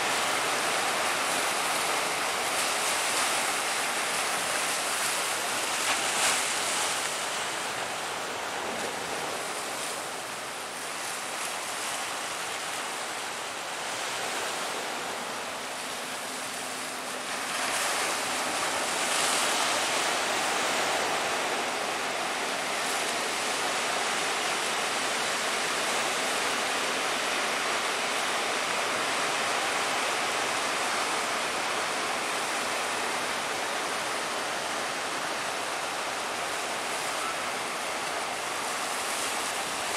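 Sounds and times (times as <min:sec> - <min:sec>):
sea waves breaking: 0:00.0 - 0:39.9.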